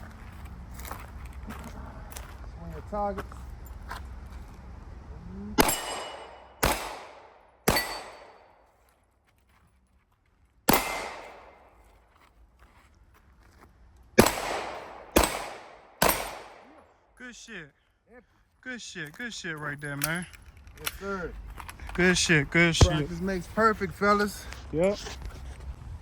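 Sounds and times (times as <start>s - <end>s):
handgun shots echoing: 5.6s - 8.6s, 10.7s - 11.8s, 14.2s - 16.8s.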